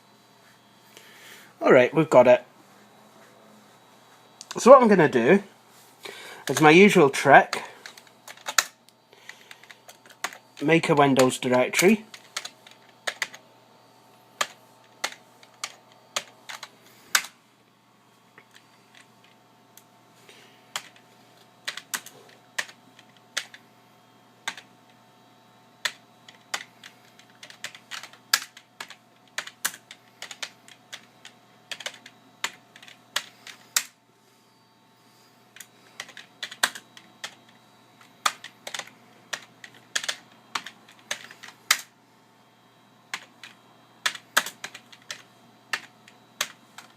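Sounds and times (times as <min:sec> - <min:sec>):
computer keyboard typing: 0:07.3 - 0:13.4, 0:14.4 - 0:17.4, 0:20.7 - 0:21.0, 0:21.6 - 0:23.6, 0:24.4 - 0:24.7, 0:25.8 - 0:34.0, 0:35.5 - 0:41.9, 0:43.1 - 0:46.9.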